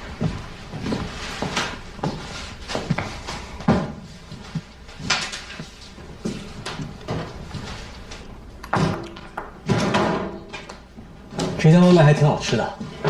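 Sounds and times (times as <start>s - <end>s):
objects knocking and clattering: 3.6s - 11.6s.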